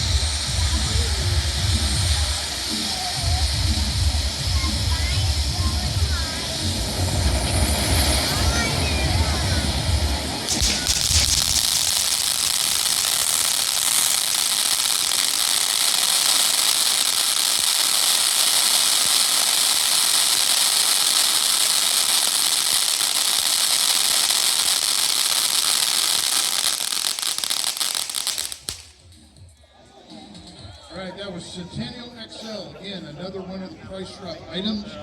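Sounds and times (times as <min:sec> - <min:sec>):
firework hissing and crackling: 0:00.0 - 0:29.2.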